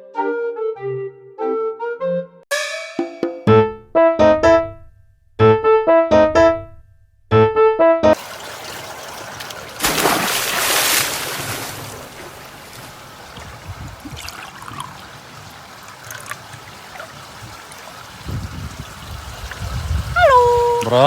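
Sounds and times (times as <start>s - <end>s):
water trickling and splashing: 8.2s - 21.0s.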